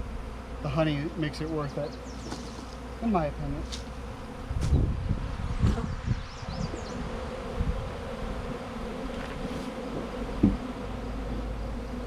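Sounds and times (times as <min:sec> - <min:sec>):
bee swarm buzzing: 0:00.0 - 0:12.0
low thump: 0:10.0 - 0:10.7.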